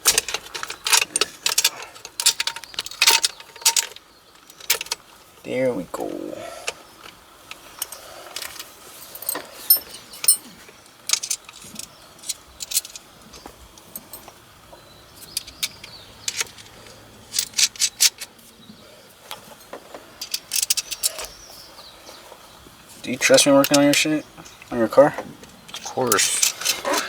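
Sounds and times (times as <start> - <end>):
metal parts clicking and clinking: 0.0 - 5.2, 6.6 - 14.4, 15.2 - 18.4, 19.3 - 21.4, 23.1 - 24.8, 25.4 - 27.0.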